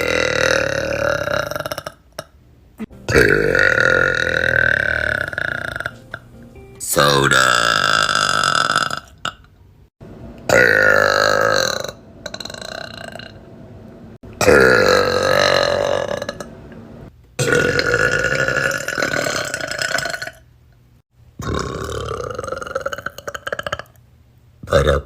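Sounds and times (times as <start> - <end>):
girls burping loudly: 3.0 - 6.0.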